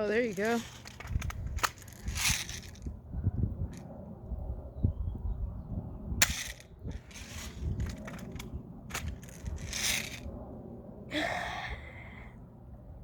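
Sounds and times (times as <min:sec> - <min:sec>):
rasping mechanical scrapes: 0:06.3 - 0:10.2.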